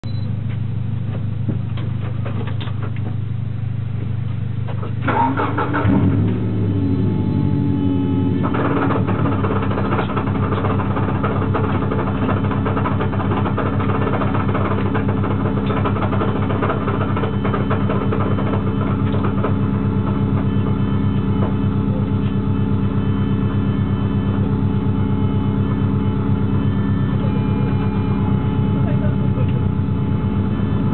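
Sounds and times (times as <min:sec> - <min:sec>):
car engine idling: 0:00.0 - 0:30.9
loud rapid rattling: 0:08.4 - 0:20.1.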